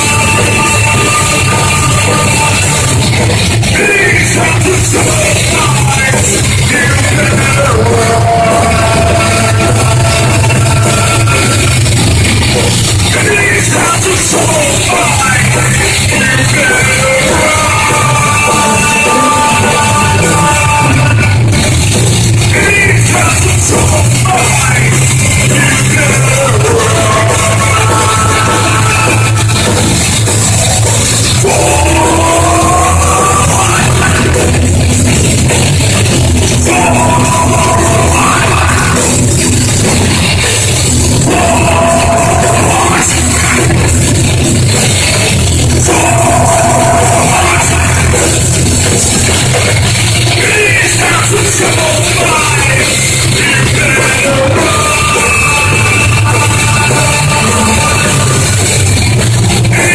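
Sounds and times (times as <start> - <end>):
live rock band playing: 0.0 - 59.9.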